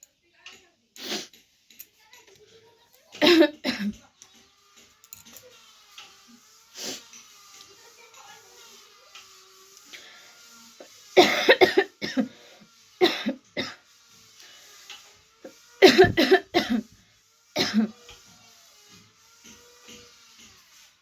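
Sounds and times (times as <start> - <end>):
woman coughing: 3.2 - 4.0, 11.2 - 12.4, 13.0 - 13.8, 15.8 - 16.9, 17.6 - 17.9.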